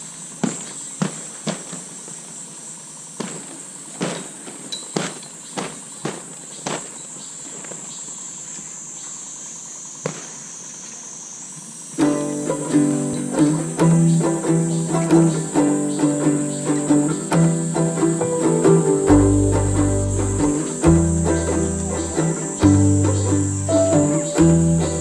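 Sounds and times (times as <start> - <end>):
insects chirping: 4.7 - 25.0
guitar music: 12.0 - 25.0.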